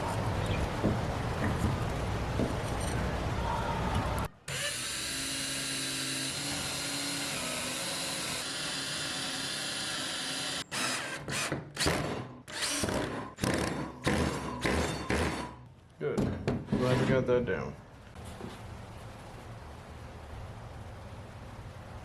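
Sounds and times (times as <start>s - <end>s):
power drill driving screws: 4.5s - 15.5s.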